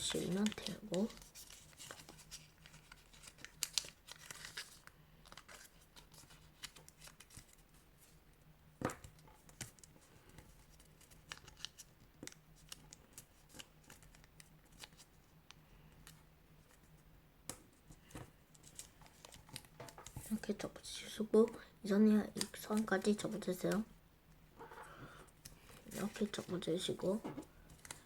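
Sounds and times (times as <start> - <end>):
paper crinkling and creasing: 0.0 - 8.2, 9.4 - 15.1, 18.6 - 20.6, 25.5 - 28.0.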